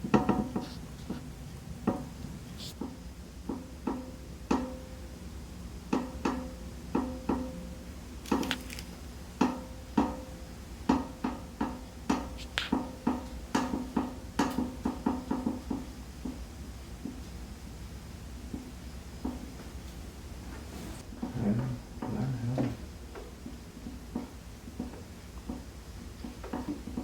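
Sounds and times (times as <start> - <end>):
office chair creaking: 8.2 - 8.9.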